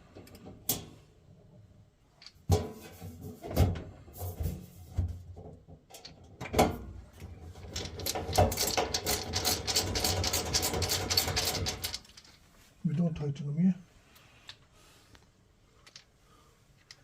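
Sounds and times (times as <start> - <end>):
metal parts knocking and clunking: 5.5 - 12.4, 15.8 - 16.1.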